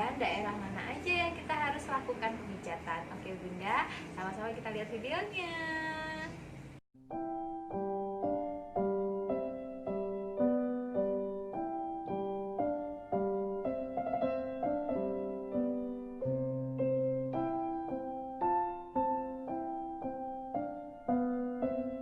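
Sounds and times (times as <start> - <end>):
piano-like keyboard music: 7.0 - 22.0.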